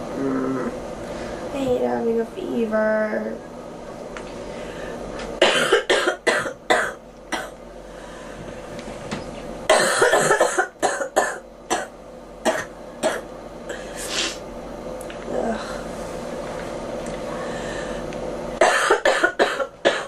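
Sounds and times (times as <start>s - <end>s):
girl coughing: 5.4s - 7.6s, 9.7s - 13.2s, 18.6s - 20.0s.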